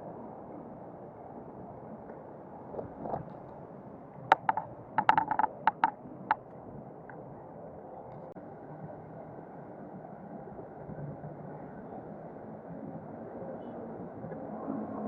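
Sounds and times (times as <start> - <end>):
road noise: 1.4 - 8.4.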